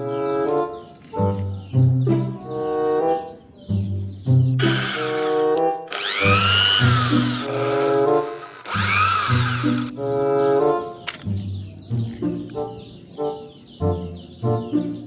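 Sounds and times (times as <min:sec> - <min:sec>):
background music with brass: 0:00.0 - 0:04.6, 0:10.0 - 0:15.0
power drill whining: 0:04.6 - 0:09.9.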